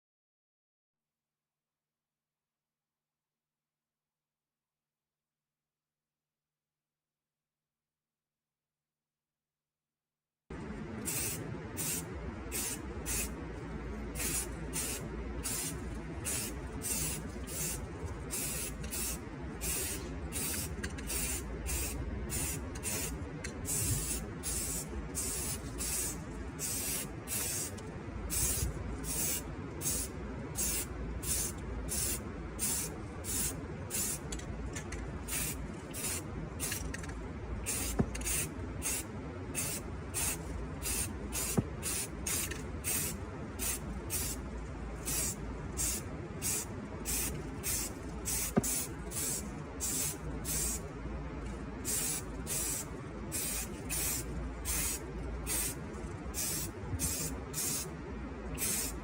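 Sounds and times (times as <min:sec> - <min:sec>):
steady low hum: 0:10.5 - 0:59.0
spray paint hissing: 0:11.0 - 0:13.4, 0:14.1 - 0:34.4, 0:35.2 - 0:44.4, 0:45.0 - 0:50.8, 0:51.8 - 0:57.9, 0:58.6 - 0:59.0.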